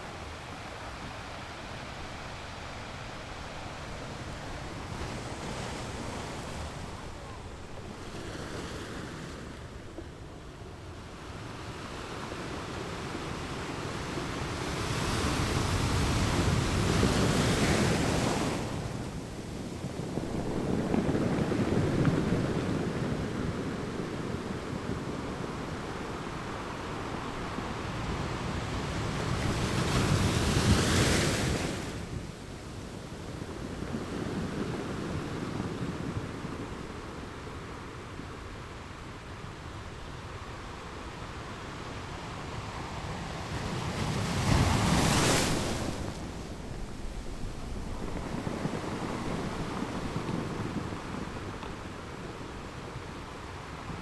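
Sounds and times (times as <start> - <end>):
wind noise on microphone: 11.8 - 40.7, 42.4 - 54.0
ocean waves breaking: 43.2 - 54.0.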